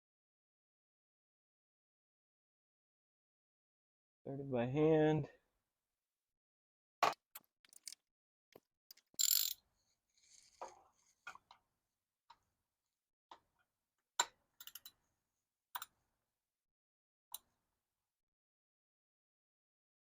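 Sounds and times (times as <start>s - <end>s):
ratchet metallic clicks: 7.1s - 8.0s, 8.9s - 9.6s.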